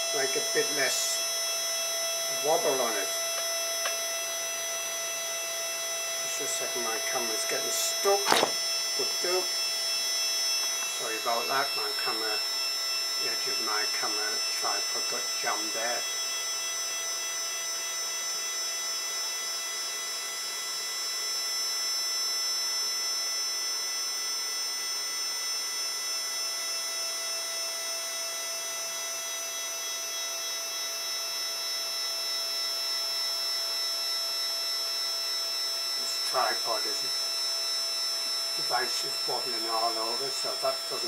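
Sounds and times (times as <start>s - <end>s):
stepper motors whining: 0.0s - 18.5s, 29.2s - 41.0s.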